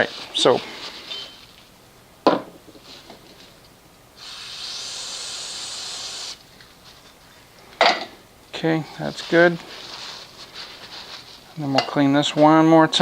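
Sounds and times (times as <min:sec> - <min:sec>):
aerosol spray hissing: 0:04.2 - 0:06.6.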